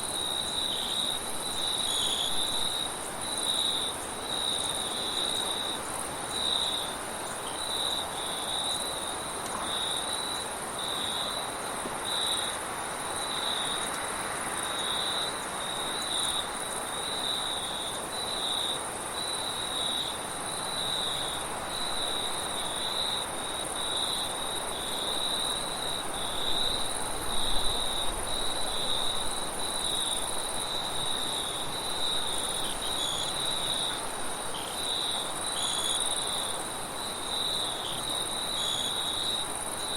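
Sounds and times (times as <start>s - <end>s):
crickets chirping: 0.0s - 39.9s
high insect trill: 14.6s - 39.9s.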